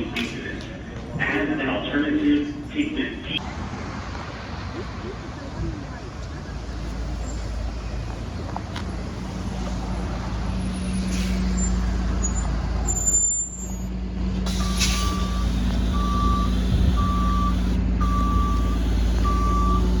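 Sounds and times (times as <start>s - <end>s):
train equipment humming: 14.2s - 20.0s
short air hiss: 14.5s - 15.9s
single-tone beep: 14.6s - 20.0s.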